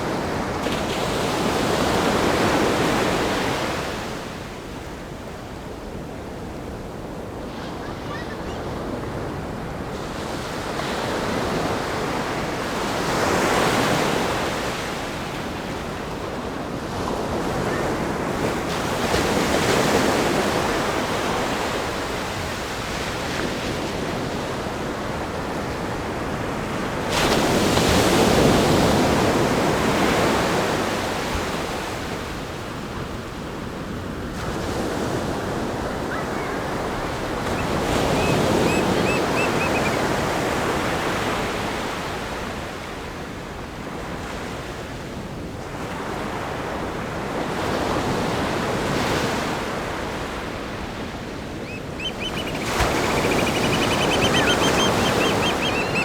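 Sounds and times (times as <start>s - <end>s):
ocean surf breaking: 34.4s - 42.4s, 47.4s - 56.0s.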